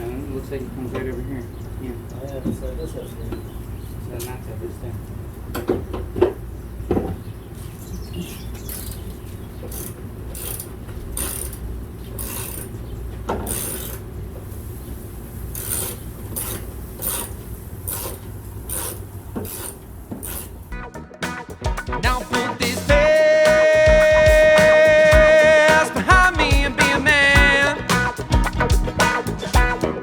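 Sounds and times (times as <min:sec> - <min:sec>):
ratchet wrench strokes: 0:09.7 - 0:12.7, 0:13.4 - 0:14.0, 0:15.5 - 0:20.7.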